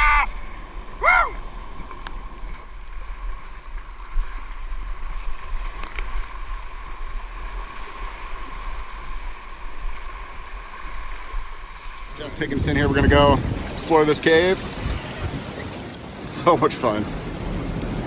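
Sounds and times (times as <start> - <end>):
person shouting: 0.0 - 0.4, 1.0 - 1.4
sea water washing: 0.0 - 18.0
wind on microphone: 0.0 - 18.0.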